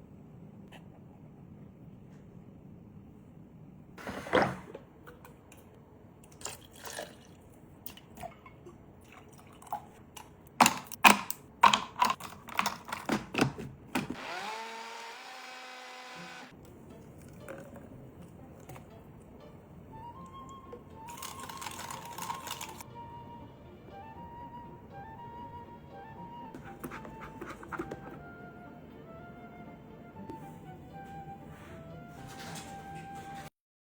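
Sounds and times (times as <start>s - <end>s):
pitched hum: 14.2s - 16.5s.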